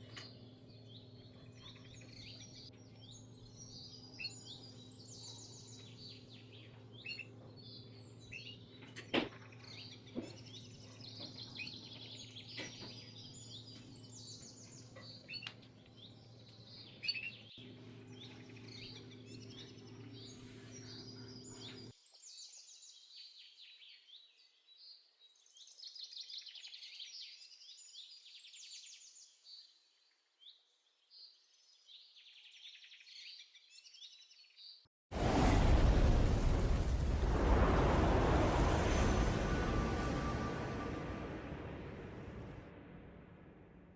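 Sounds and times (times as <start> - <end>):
low steady hum: 0.0 - 21.9, 35.2 - 43.9
small birds chirping: 0.0 - 34.9.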